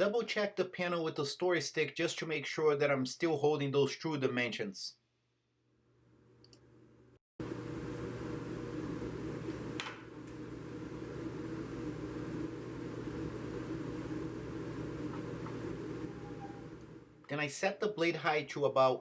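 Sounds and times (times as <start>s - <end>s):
motor hum: 7.4s - 17.2s.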